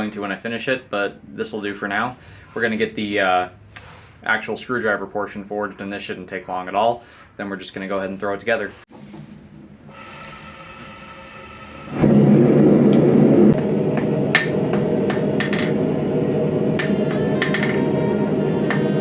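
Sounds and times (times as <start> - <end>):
forge roaring: 11.9 - 19.0.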